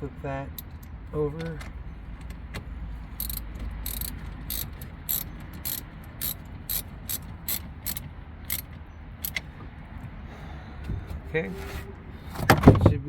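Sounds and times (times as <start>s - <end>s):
socket ratchet clicking: 0.5s - 1.0s, 3.2s - 9.5s.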